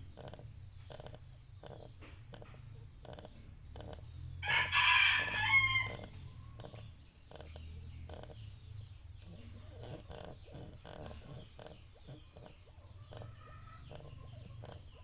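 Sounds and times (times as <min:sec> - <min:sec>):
rooster crowing: 0:04.4 - 0:06.1.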